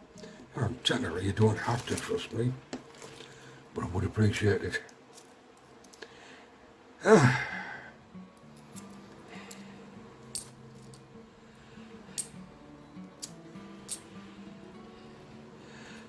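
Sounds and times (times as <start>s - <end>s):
coins clicking: 10.3s - 11.1s, 12.1s - 12.5s, 13.2s - 14.1s.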